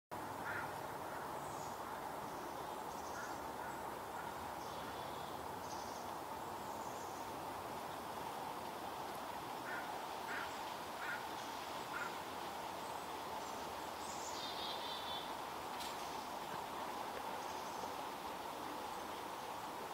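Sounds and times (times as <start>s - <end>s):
background noise: 0.1s - 19.9s
chickadee calls: 9.6s - 12.2s, 14.0s - 16.2s.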